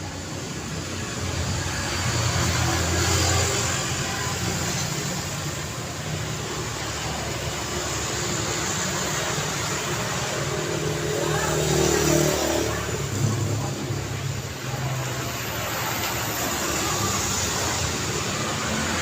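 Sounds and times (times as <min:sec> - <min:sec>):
street traffic: 0:00.0 - 0:19.0
vehicle passing close: 0:06.4 - 0:19.0.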